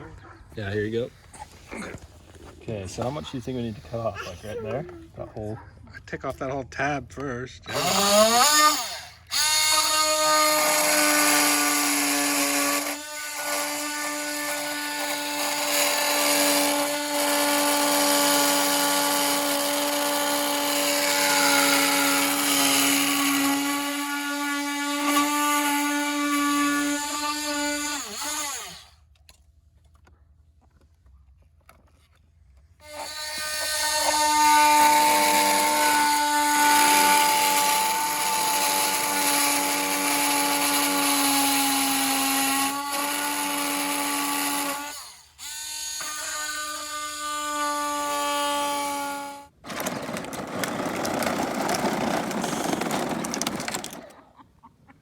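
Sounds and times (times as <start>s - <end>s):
power tool whining: 7.7s - 29.1s, 32.8s - 54.2s.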